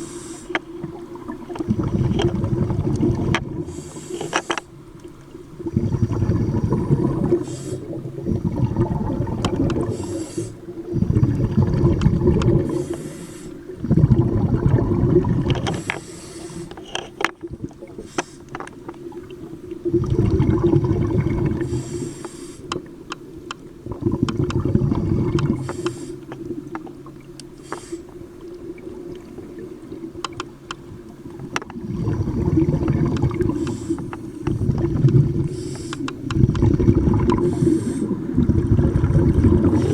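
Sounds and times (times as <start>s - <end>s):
hissing regulator inhale: 0.0s - 0.8s, 1.8s - 4.9s, 5.7s - 14.2s, 15.5s - 17.2s, 17.8s - 18.7s, 21.4s - 22.9s, 24.6s - 26.5s, 27.5s - 28.3s, 33.3s - 38.5s, 39.5s - 39.9s
exhaled bubbles rumbling: 0.6s - 15.9s, 17.4s - 18.1s, 18.8s - 22.2s, 22.8s - 39.9s.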